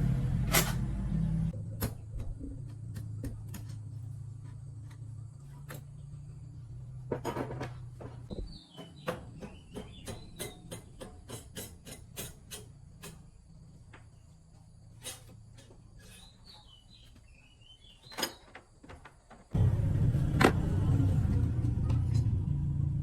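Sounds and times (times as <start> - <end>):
small bird chirping: 8.3 - 11.3, 16.0 - 18.5
hand tools clicking on metal: 8.8 - 13.3.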